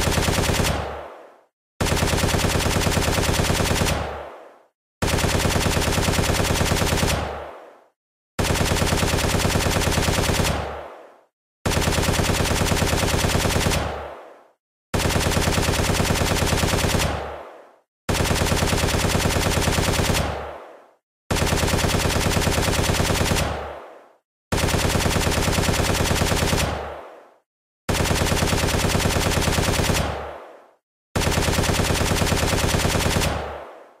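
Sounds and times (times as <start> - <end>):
rifle automatic fire bursts: 0.0 - 1.0, 1.8 - 4.2, 5.0 - 7.4, 8.4 - 10.8, 11.7 - 14.1, 15.0 - 17.4, 18.1 - 20.6, 21.3 - 23.8, 24.5 - 27.0, 27.9 - 30.4, 31.2 - 33.7.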